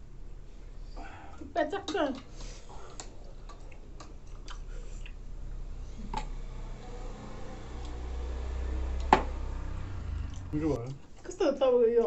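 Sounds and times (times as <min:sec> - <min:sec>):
person chewing: 0:02.8 - 0:05.2.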